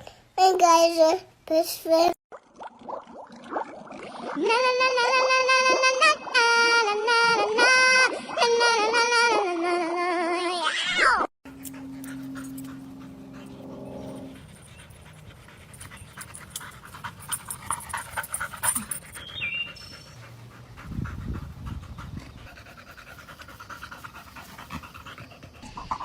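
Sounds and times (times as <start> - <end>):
steady hum: 11.5 - 16.8
dog panting: 11.5 - 26.0.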